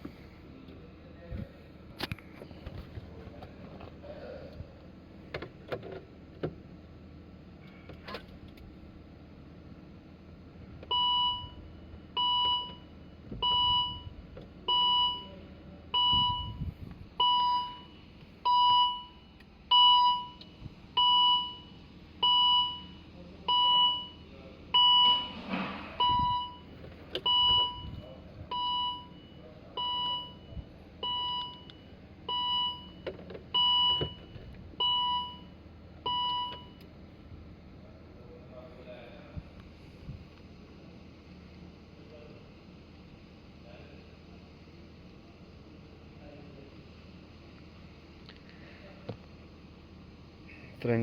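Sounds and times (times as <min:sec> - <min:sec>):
car warning chime beeping: 0:10.9 - 0:16.6, 0:17.2 - 0:25.3, 0:26.0 - 0:36.8.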